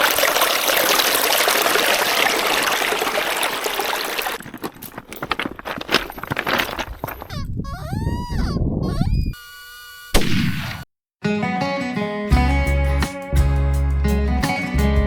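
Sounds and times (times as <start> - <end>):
running water rushing: 0.0 - 4.5.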